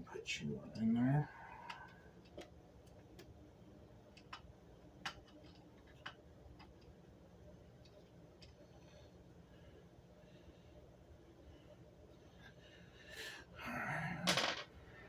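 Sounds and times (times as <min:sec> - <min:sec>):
small parts clicking and tapping: 0:01.6 - 0:03.4, 0:04.1 - 0:07.0, 0:07.8 - 0:08.6.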